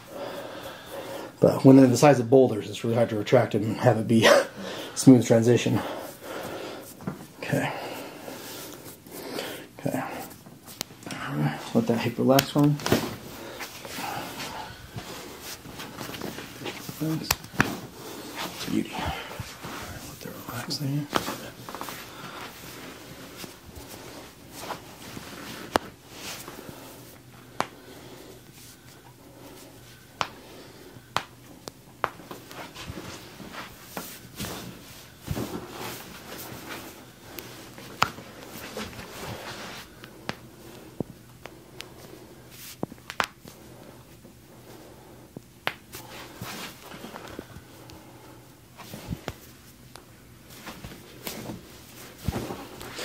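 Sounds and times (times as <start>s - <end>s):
rustling of skin and clothing: 5.0s - 53.0s.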